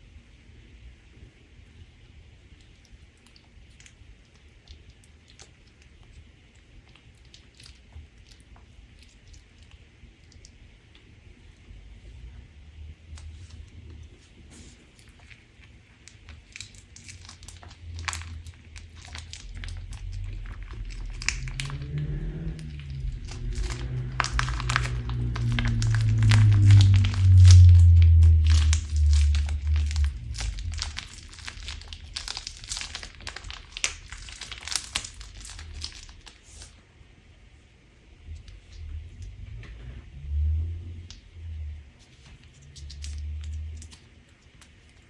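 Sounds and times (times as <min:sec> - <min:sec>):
slime squeezed crackling and popping: 0:15.0 - 0:36.7.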